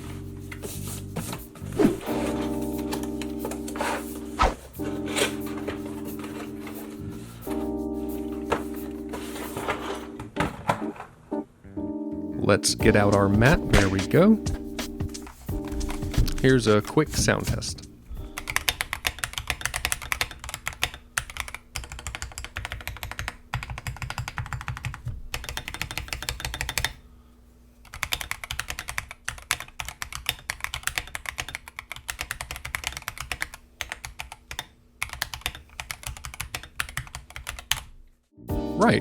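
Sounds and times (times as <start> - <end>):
mechanical keyboard typing: 18.2 - 27.0, 27.9 - 37.9.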